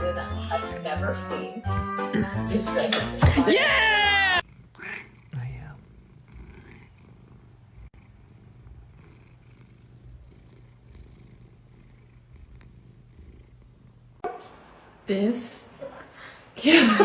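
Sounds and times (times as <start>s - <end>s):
cat purring: 4.4s - 14.3s.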